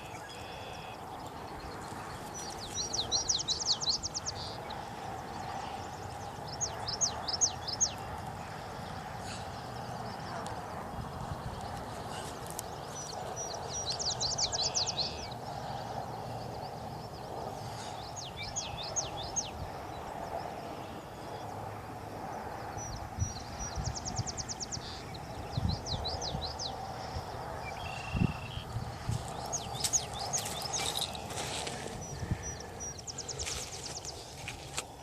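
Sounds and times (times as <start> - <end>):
songbird trilling: 0.0 - 8.1, 11.5 - 15.5, 17.8 - 19.6, 27.6 - 34.5
outdoor background noise: 0.0 - 35.0.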